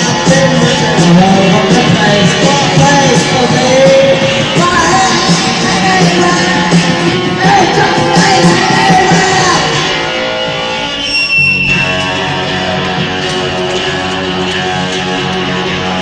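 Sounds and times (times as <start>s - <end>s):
yelled vocals: 0.0s - 10.4s
drums: 0.0s - 16.0s
electric guitar: 0.0s - 16.0s.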